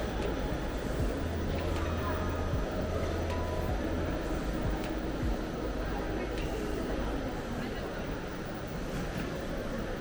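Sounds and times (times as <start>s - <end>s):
low hum of terminal hall: 0.0s - 10.0s.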